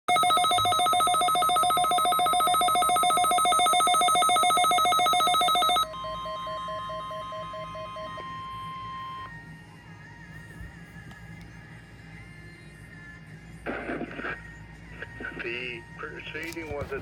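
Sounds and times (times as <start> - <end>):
rapidly pulsing alert tone: 0.1 - 8.1
steady alarm tone: 0.1 - 9.3.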